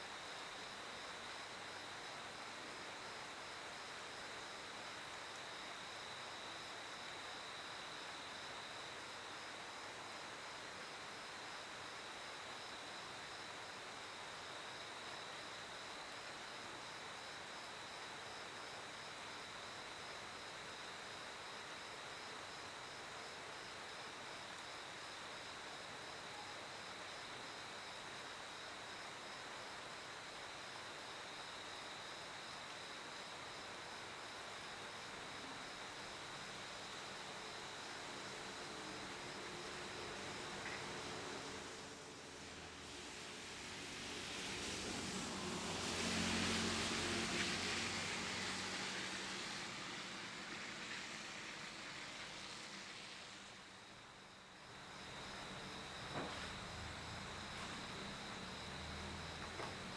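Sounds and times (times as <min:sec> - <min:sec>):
cricket continuous trill: 0:00.0 - 0:59.9
cricket pulsing chirps: 0:18.0 - 0:41.8.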